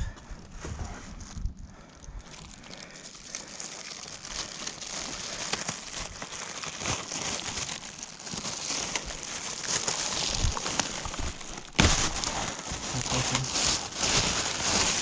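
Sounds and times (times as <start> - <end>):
packaging crinkling and rustling: 0.4 - 15.0.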